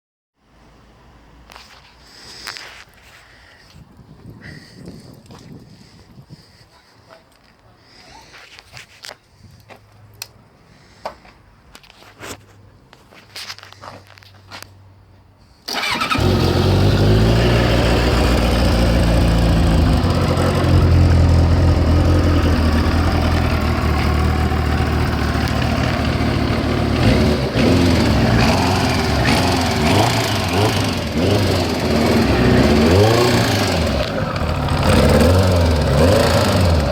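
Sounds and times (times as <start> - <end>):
motorcycle engine starting and running: 15.7 - 36.9.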